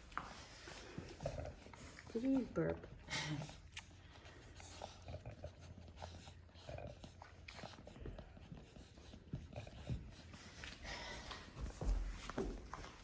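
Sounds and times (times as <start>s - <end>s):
puppies suckling and smacking: 0.0s - 13.0s.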